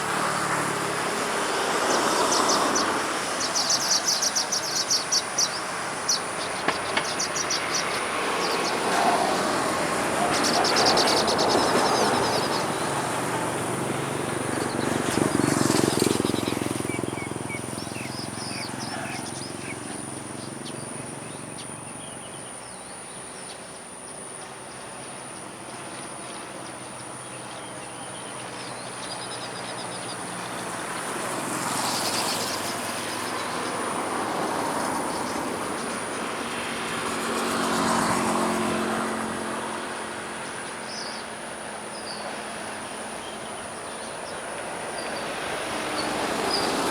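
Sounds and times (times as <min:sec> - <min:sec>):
passing vehicles: 0:00.0 - 0:46.9
small birds chirping: 0:02.0 - 0:13.7, 0:14.5 - 0:30.7.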